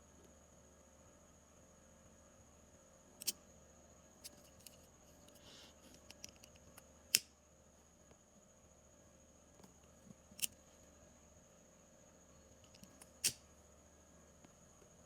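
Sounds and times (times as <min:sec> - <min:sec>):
faint high whine: 0:00.0 - 0:15.0
tools and phone parts clicking: 0:04.2 - 0:07.2.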